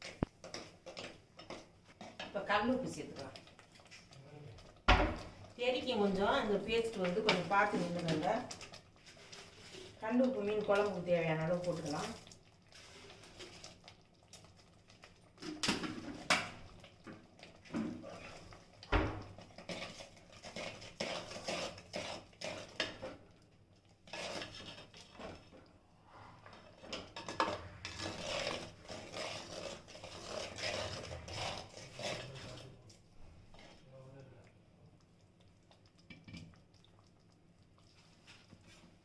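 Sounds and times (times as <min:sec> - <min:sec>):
metal spoon scraping a pan: 0:00.0 - 0:13.9, 0:18.0 - 0:18.7, 0:19.4 - 0:23.2, 0:24.0 - 0:25.5, 0:26.5 - 0:32.8.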